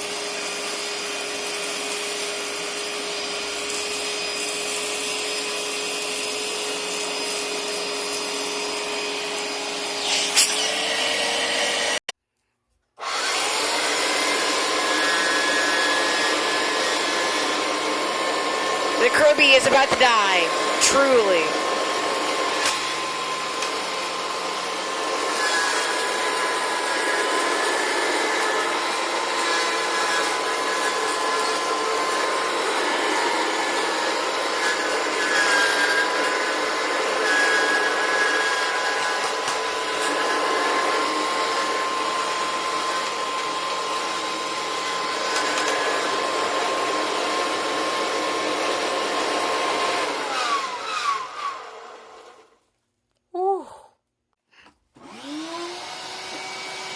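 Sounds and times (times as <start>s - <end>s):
vacuum cleaner motor whine: 0.0s - 12.1s, 13.0s - 52.6s, 55.0s - 56.9s.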